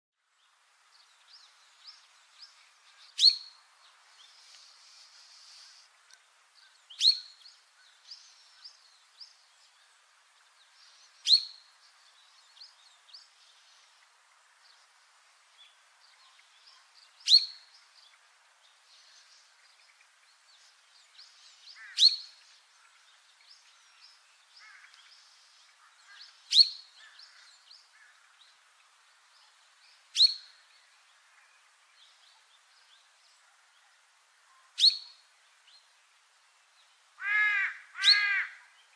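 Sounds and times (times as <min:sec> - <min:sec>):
faint soft bird chirps: 0:00.2 - 0:37.2
songbird sharp descending calls: 0:37.2 - 0:38.6.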